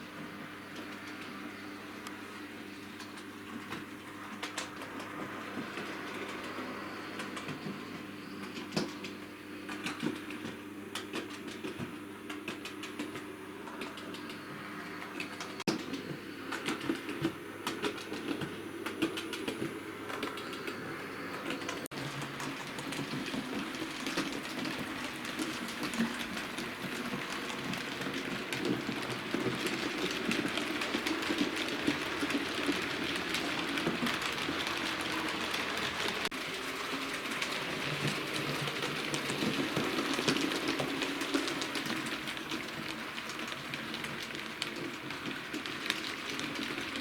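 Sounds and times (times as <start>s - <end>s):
wheels clicking over rail joints: 15.1s - 47.0s.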